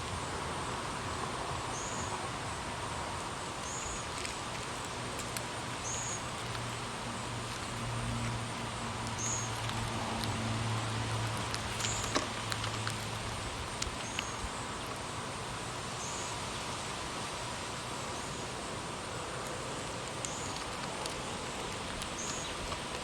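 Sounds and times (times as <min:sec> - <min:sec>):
wind rustling: 0:00.0 - 0:23.0
faint ticks: 0:19.4 - 0:23.0.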